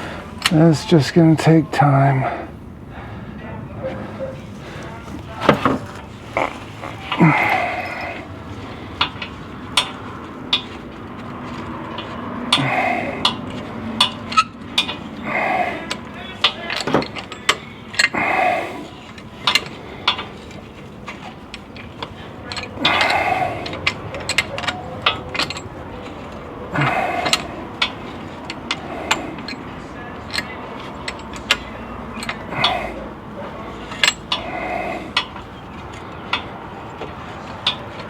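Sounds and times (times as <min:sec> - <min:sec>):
person grunting: 0:06.3 - 0:08.3, 0:12.6 - 0:13.2, 0:15.3 - 0:15.9, 0:18.2 - 0:18.9, 0:26.8 - 0:27.6, 0:32.5 - 0:33.0
wrench clicking on metal: 0:26.8 - 0:33.0.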